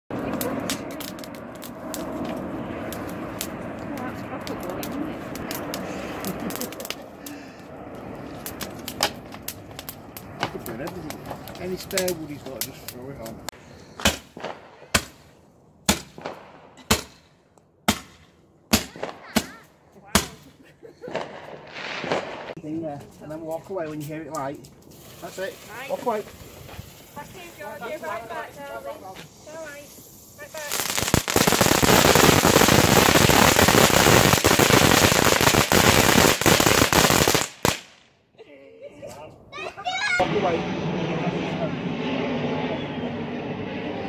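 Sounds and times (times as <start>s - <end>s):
fireworks bangs: 0.1s - 15.3s, 15.9s - 17.2s, 17.9s - 22.6s, 24.9s - 38.0s.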